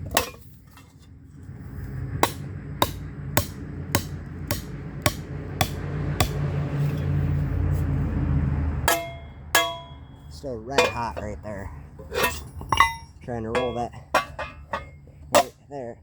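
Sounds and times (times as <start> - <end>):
low steady rumble: 0.0 - 16.0
hammer striking hot steel: 2.2 - 6.4, 8.9 - 11.3.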